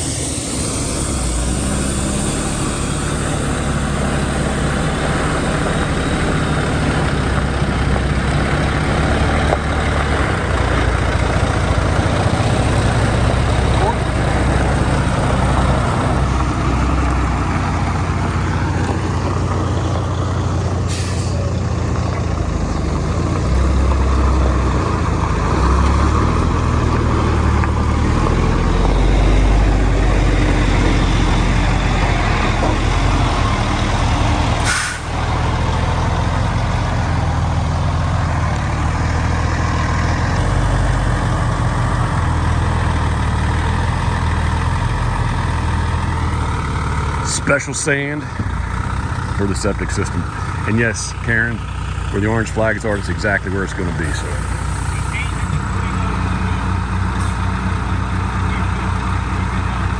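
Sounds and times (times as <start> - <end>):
short hiss: 0.0 - 6.0, 20.9 - 21.4, 34.6 - 35.2
diesel engine rumbling: 0.0 - 59.9.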